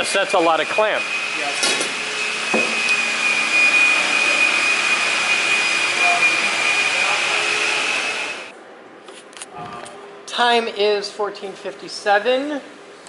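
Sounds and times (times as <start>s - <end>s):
high-pitched whine: 0.0s - 8.6s.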